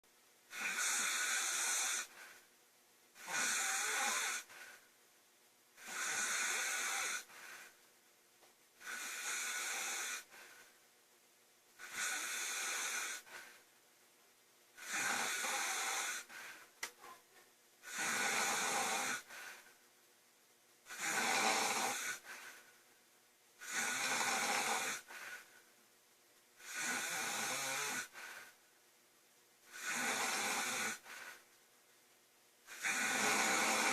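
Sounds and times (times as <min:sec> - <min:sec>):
woman snoring: 0:00.5 - 0:02.4, 0:03.2 - 0:04.8, 0:05.8 - 0:07.7, 0:08.8 - 0:10.6, 0:11.8 - 0:13.5, 0:14.8 - 0:16.6, 0:17.8 - 0:19.6, 0:20.9 - 0:22.6, 0:23.6 - 0:25.5, 0:26.6 - 0:28.6, 0:29.7 - 0:31.4, 0:32.7 - 0:33.9.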